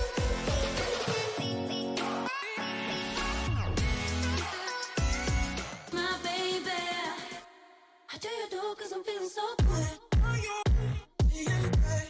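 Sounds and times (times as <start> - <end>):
background pop music: 0.0 - 12.0.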